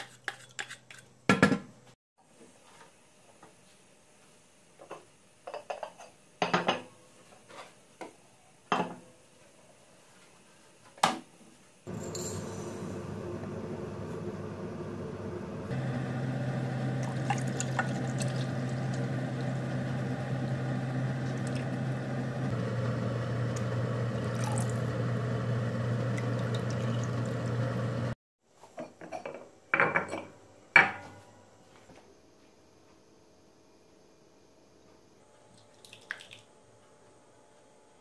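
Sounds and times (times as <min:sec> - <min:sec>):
low hum: 0:11.9 - 0:28.2
water running into a sink: 0:16.9 - 0:20.2, 0:24.1 - 0:25.0, 0:26.1 - 0:27.6.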